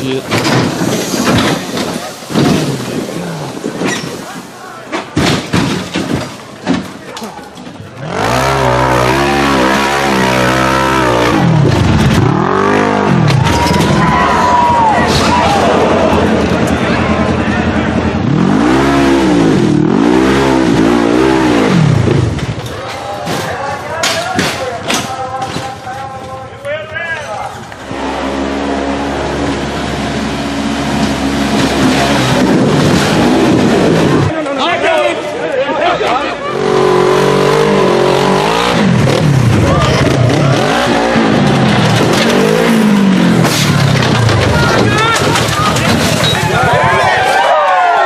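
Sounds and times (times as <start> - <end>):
off-road vehicle engine revving: 7.9 - 22.8, 27.6 - 34.3, 36.3 - 47.4.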